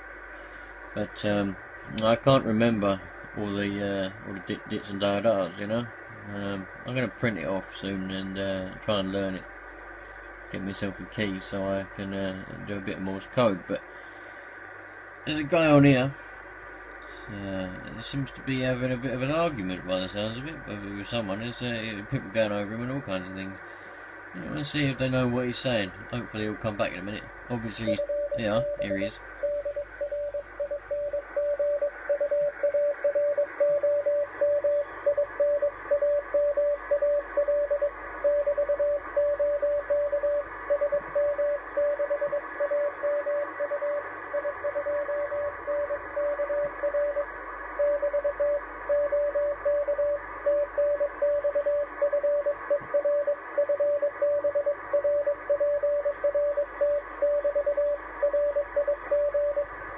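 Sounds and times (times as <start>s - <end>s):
radio band hiss: 0.0s - 59.9s
morse code beeps: 27.8s - 59.7s.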